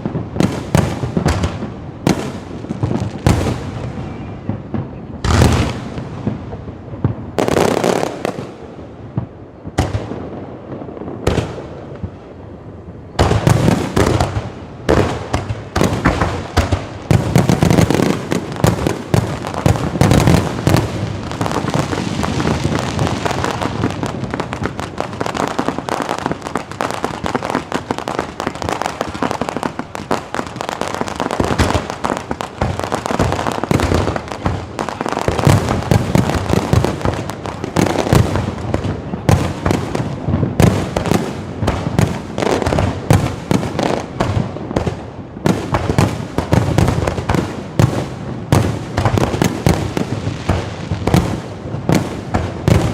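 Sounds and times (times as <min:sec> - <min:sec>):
fireworks bangs and crackling: 0:00.0 - 0:52.9.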